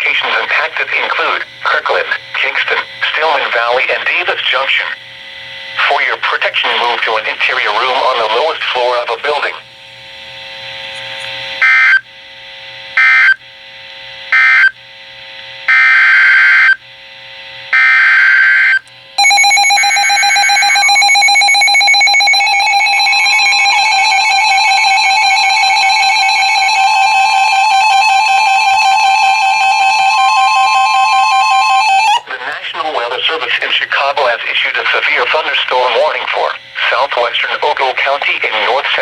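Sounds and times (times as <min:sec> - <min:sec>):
screeching digital data bursts: 0:18.4 - 0:32.2
second steady tone: 0:19.2 - 0:32.3.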